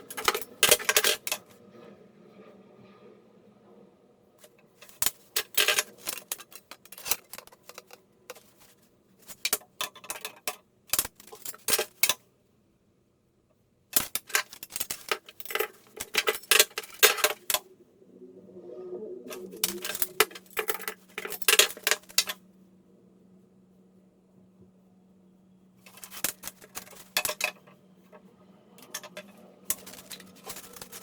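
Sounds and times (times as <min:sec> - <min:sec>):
small hard objects clattering: 0:00.0 - 0:01.5, 0:04.4 - 0:12.2, 0:14.0 - 0:17.7, 0:19.3 - 0:22.4, 0:25.8 - 0:27.8, 0:28.8 - 0:31.0.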